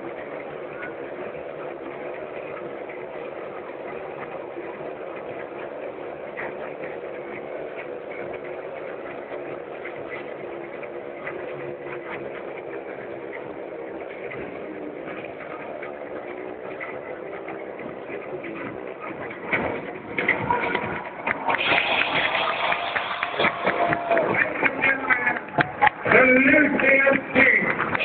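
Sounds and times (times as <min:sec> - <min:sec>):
motorcycle engines running: 0:00.0 - 0:28.0.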